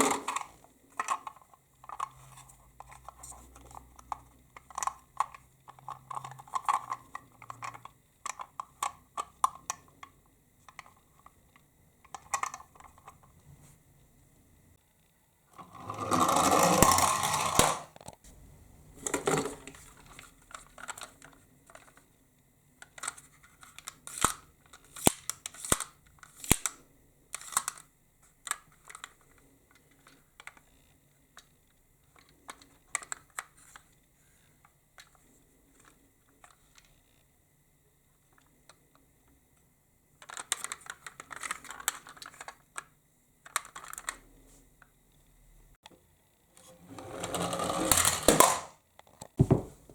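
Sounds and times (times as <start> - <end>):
plastic toy cars clicking: 0.0 - 13.3, 15.6 - 18.2, 19.0 - 22.1, 22.8 - 34.0, 40.2 - 44.3, 46.6 - 49.3
toy car rattling down a slope: 15.6 - 17.9, 46.6 - 48.8.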